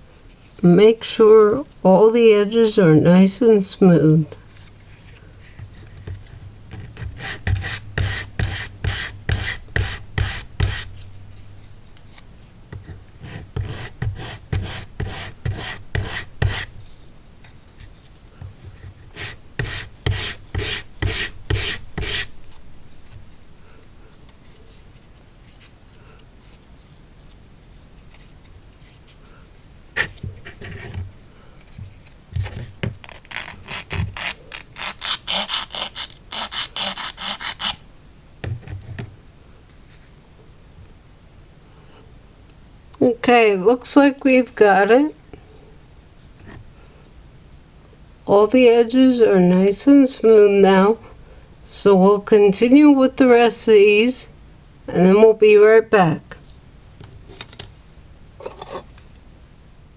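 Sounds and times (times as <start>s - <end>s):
wood scraping on emery board: 18.7s - 22.3s.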